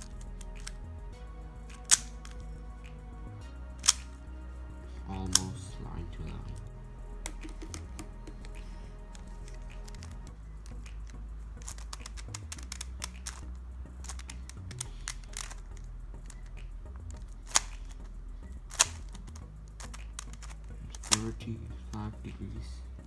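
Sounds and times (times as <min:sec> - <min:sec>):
puzzle cube plastic clicks: 0:00.0 - 0:01.0, 0:01.6 - 0:03.0, 0:03.8 - 0:04.2, 0:05.2 - 0:22.0
sharp plastic snaps: 0:00.0 - 0:01.0, 0:01.7 - 0:03.1, 0:03.8 - 0:04.3, 0:05.2 - 0:22.0
soft background music: 0:00.0 - 0:23.0.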